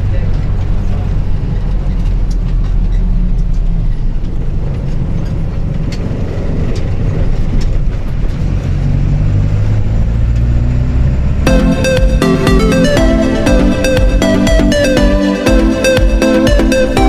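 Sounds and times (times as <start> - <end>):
engine and road rumble: 0.0 - 17.0.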